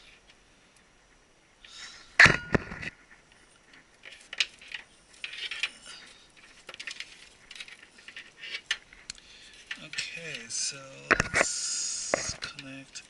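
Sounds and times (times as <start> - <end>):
plastic and cable rustling: 2.6 - 13.0.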